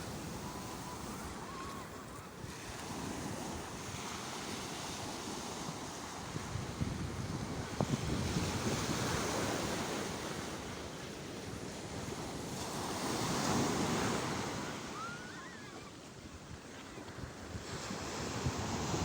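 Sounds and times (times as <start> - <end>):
sea waves washing ashore: 0.0 - 19.0
wind buffeting microphone: 4.9 - 15.2, 16.2 - 19.0.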